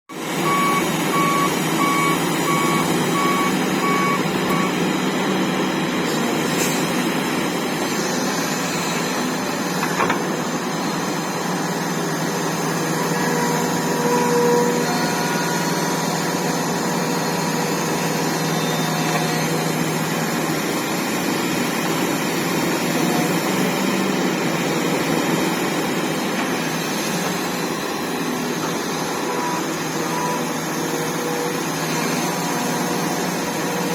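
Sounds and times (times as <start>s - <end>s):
heavy diesel machinery running: 0.1s - 33.9s
backup alarm beeping: 0.4s - 4.8s.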